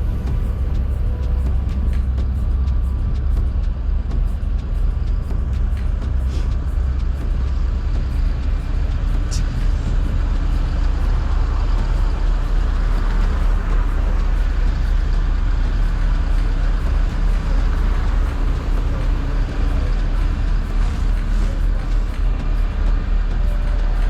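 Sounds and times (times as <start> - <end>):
street traffic rumble: 0.0 - 24.0.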